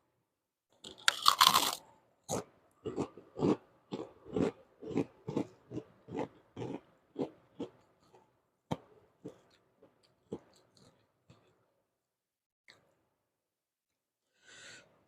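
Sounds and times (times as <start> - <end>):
person chewing food: 0.8 - 11.6.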